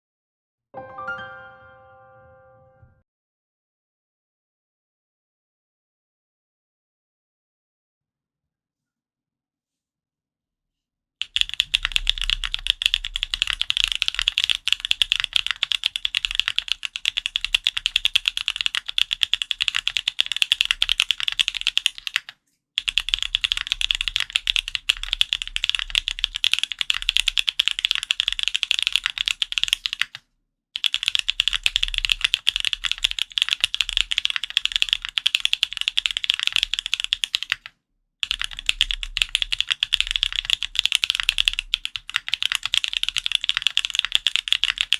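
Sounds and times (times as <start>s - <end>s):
mechanical keyboard typing: 11.2s - 30.2s, 30.8s - 44.9s.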